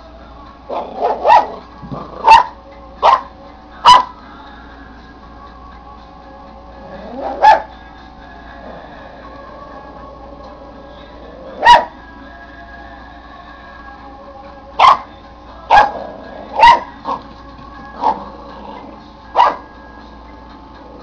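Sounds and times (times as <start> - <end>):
puppy barking: 0.7 - 4.2, 7.2 - 7.7, 11.6 - 12.0, 14.8 - 15.1, 15.7 - 16.0, 16.6 - 17.2, 18.0 - 18.3, 19.4 - 19.6.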